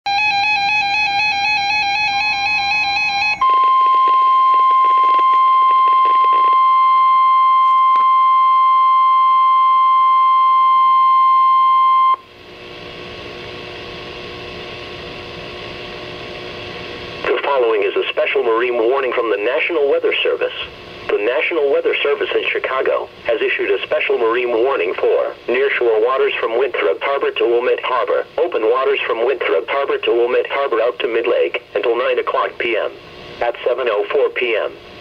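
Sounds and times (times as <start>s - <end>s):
steady warning alarm tone: 0.1s - 12.2s
faint hum: 0.1s - 35.0s
radio static hiss: 16.4s - 35.0s.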